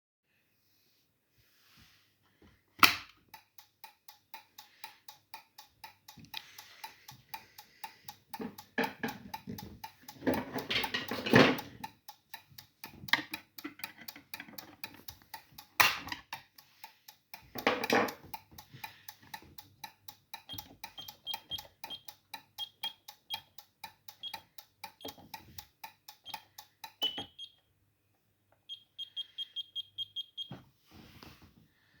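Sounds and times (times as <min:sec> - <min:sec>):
alarm sounder beeping: 0:28.7 - 0:30.5.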